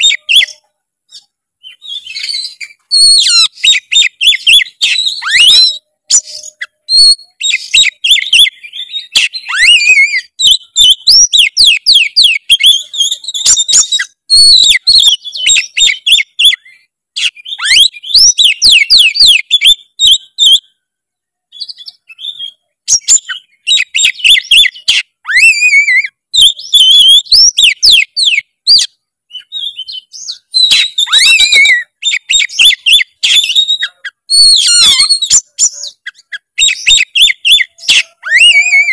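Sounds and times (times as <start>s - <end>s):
songbird whistles and trills: 0.0s - 38.9s.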